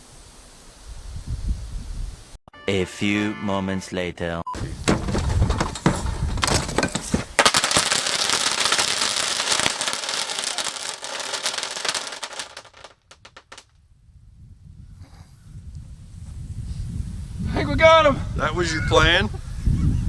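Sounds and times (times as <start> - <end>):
firecrackers popping: 4.7 - 13.7.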